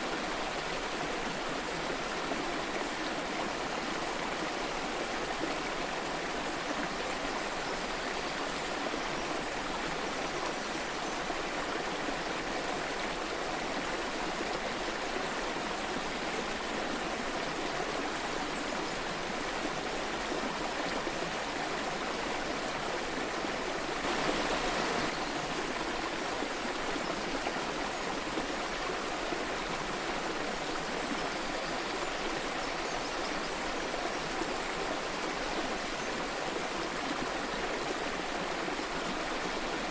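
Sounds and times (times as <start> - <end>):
waterfall rushing: 24.0 - 25.2.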